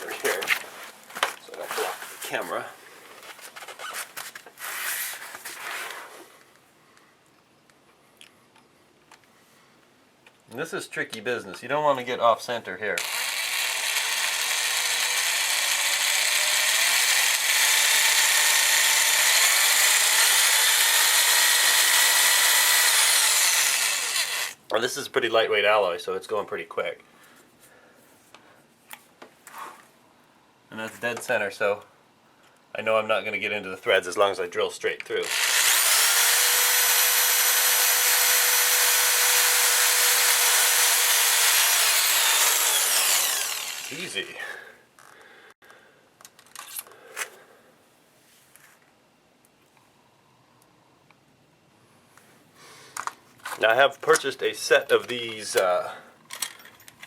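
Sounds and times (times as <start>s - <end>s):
power drill boring into metal: 13.0s - 24.6s, 35.2s - 44.2s.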